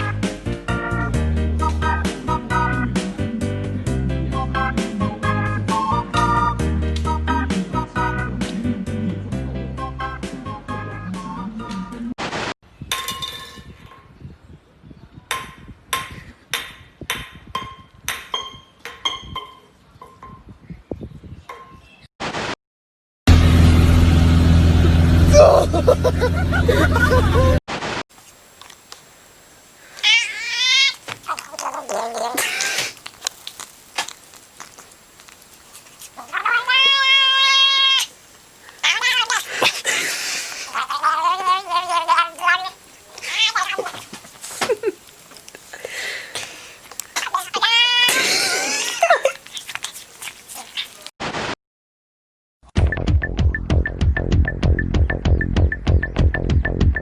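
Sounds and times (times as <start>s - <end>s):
cat meowing: 30.0s - 33.5s, 35.7s - 39.8s, 40.7s - 44.4s, 47.1s - 51.1s.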